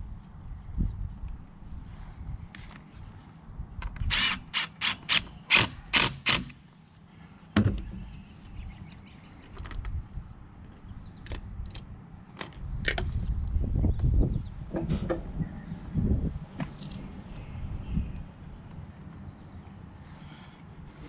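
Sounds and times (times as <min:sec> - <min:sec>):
sharp ratchet-like clicks: 0:03.9 - 0:06.6.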